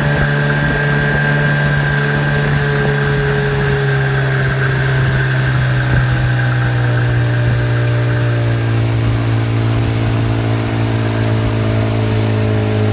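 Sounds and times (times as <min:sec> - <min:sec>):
high whistle: 0:00.0 - 0:09.5
engine running: 0:00.0 - 0:12.9.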